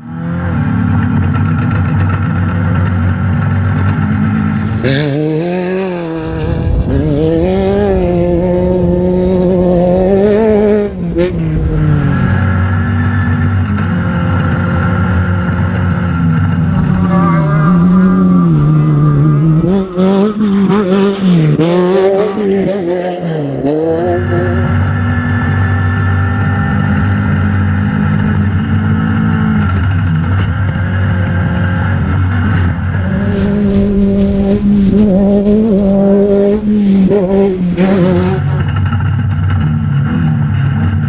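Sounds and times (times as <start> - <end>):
race car engine revving: 0.5 - 28.8, 29.6 - 40.8
engine knocks and clatter: 0.6 - 5.3, 6.2 - 17.1, 24.6 - 41.0.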